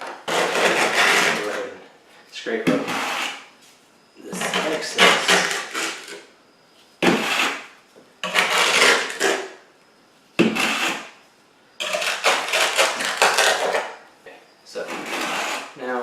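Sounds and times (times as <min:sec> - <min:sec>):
trowel scraping mortar: 0:00.0 - 0:01.8, 0:02.6 - 0:03.5, 0:04.2 - 0:06.3, 0:07.0 - 0:09.6, 0:10.4 - 0:11.2, 0:11.8 - 0:14.0, 0:14.8 - 0:15.8.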